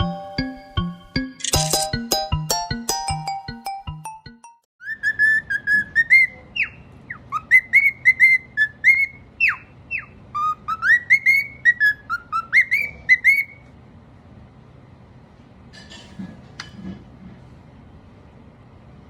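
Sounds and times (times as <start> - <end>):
cockatiel whistling: 4.8 - 13.6.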